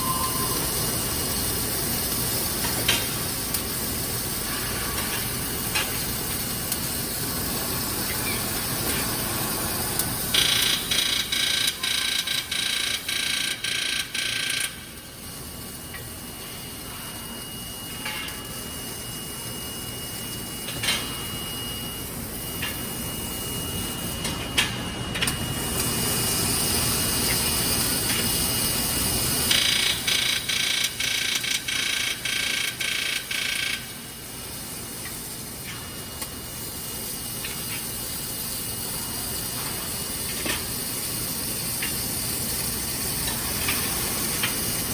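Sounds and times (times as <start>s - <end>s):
faint high tone: 0.0s - 0.6s
factory machinery noise: 0.0s - 44.9s
welding crackling and hissing: 0.5s - 14.1s, 25.3s - 32.8s, 34.0s - 44.9s.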